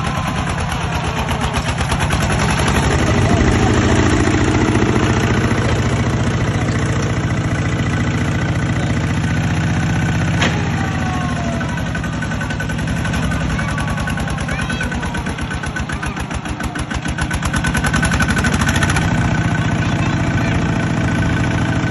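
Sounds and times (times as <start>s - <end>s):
diesel engine running: 0.0s - 21.9s.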